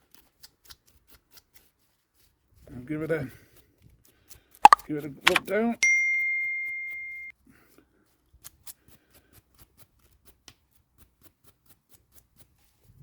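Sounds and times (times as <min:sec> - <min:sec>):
metal part ringing: 0:05.8 - 0:07.3.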